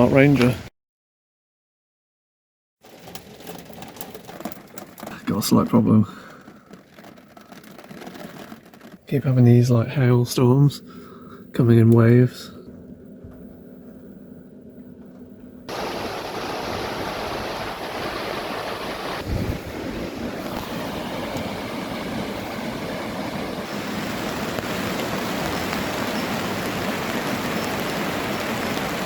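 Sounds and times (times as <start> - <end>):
heavy rain and hail: 2.8 - 9.0, 15.7 - 29.0.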